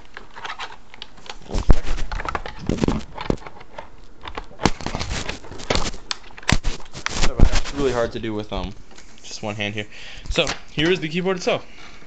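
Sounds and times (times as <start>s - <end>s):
plastic clicks and scraping: 0.0s - 7.9s.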